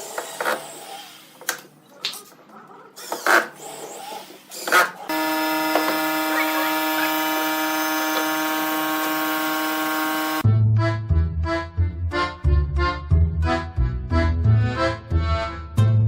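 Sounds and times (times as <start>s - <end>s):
power tool motor whining: 4.5s - 10.4s.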